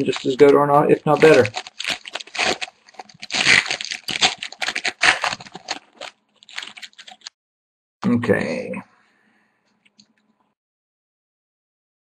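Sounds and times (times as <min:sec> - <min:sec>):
card packaging crinkling: 0:00.0 - 0:07.4.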